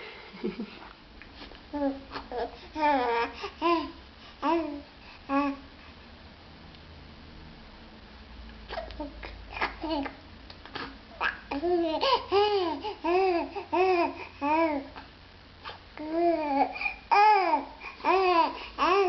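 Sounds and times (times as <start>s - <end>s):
baby babbling: 1.7s - 5.6s, 8.7s - 15.0s, 16.0s - 19.0s.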